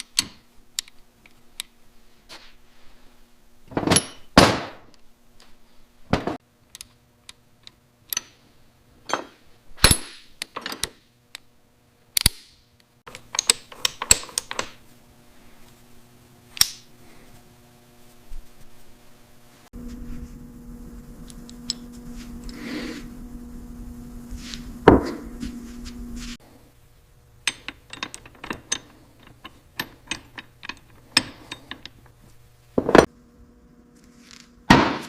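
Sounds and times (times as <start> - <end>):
tools and metal parts clicking: 7.6 - 8.4, 9.1 - 11.4, 12.2 - 14.8, 27.4 - 32.3
faint steady hum: 11.1 - 34.9
short scraping: 21.8 - 23.3.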